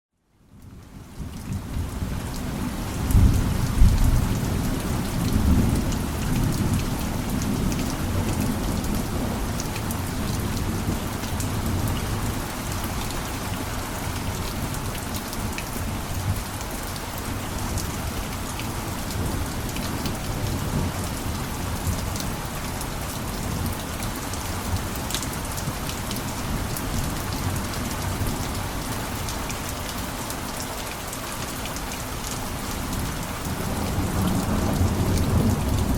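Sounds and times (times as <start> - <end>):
rain falling: 0.4 - 35.9.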